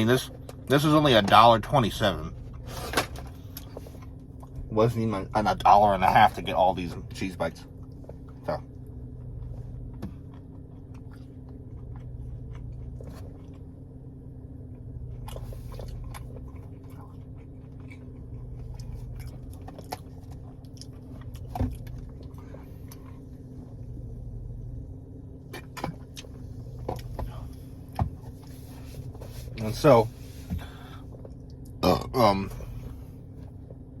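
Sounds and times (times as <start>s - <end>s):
low background hum: 0.0s - 34.0s
man chewing food: 2.4s - 4.6s, 7.6s - 24.2s, 25.4s - 29.3s.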